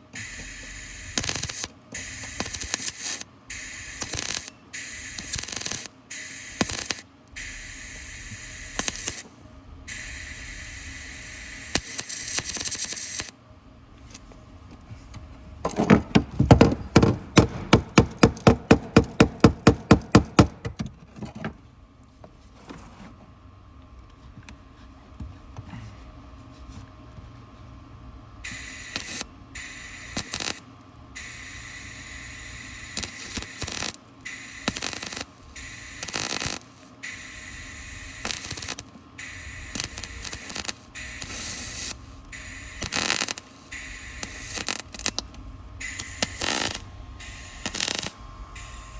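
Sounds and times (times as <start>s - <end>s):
welding arc crackling and hissing: 0.1s - 13.3s, 15.7s - 20.7s, 28.4s - 48.9s
sharp knocks: 15.6s - 20.9s.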